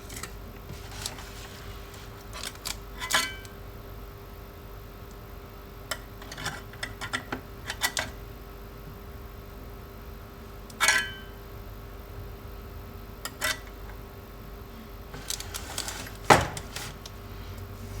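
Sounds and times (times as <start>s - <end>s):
faint steady hum: 0.0s - 18.0s.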